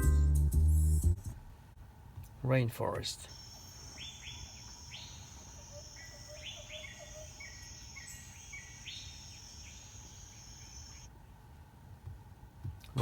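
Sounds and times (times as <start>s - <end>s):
insects buzzing: 3.2s - 11.1s
short bird calls: 3.3s - 11.1s.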